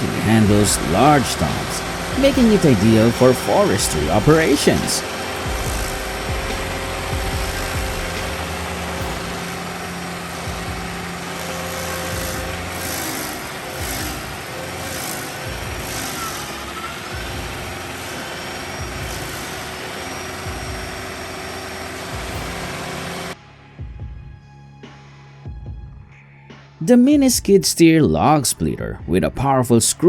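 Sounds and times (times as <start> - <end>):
cutter wheel grinding wood: 0.0 - 23.4
stump grinder engine under load: 0.0 - 23.4.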